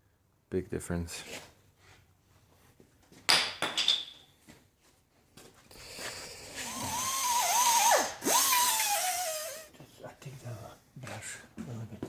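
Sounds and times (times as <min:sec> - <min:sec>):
power drill whine: 0:06.2 - 0:09.7.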